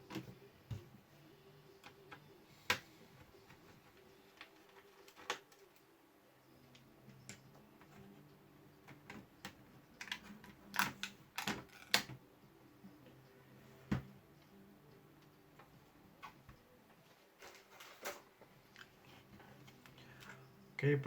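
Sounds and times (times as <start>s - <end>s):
plastic laptop parts clicking: 8.9s - 12.2s.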